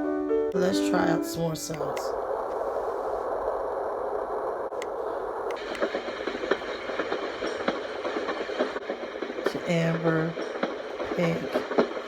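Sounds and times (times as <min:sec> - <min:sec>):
steady rushing noise from speaker: 0:01.4 - 0:07.7.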